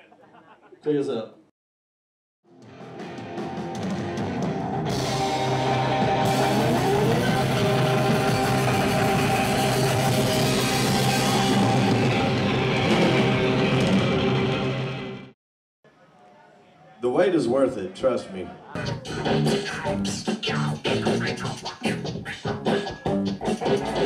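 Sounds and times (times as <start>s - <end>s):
loud live band music: 2.7s - 15.1s, 18.8s - 24.0s.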